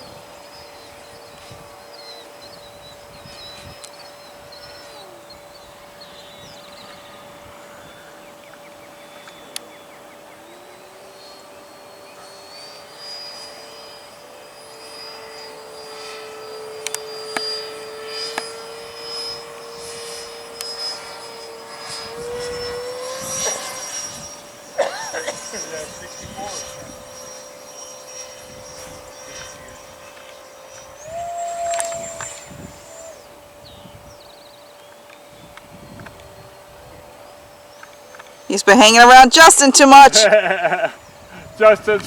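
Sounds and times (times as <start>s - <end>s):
steady hum: 0.0s - 34.5s
electric ducted fan whine: 0.0s - 42.0s.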